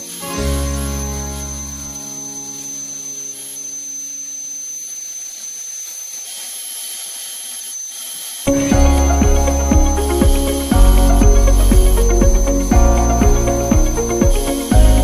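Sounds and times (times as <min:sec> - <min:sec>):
music chord: 0:00.0 - 0:03.4, 0:08.5 - 0:15.0
high-pitched whine: 0:00.0 - 0:15.0.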